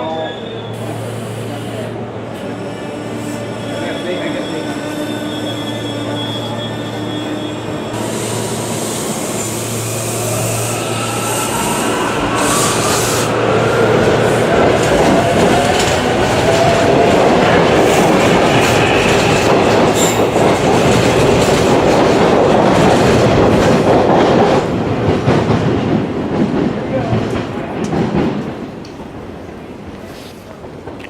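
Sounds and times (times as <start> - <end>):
wheel squeal: 3.4 - 13.3.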